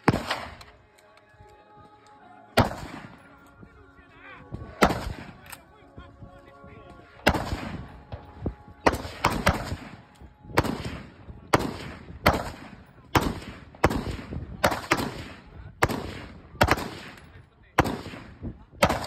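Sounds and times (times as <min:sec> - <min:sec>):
gunshots with echo: 0:00.0 - 0:00.7, 0:02.6 - 0:03.3, 0:04.7 - 0:05.4, 0:07.2 - 0:19.0.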